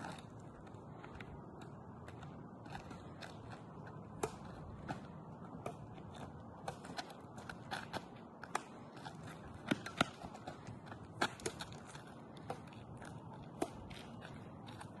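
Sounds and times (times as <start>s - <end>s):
racquets striking shuttlecock: 1.2s - 15.0s.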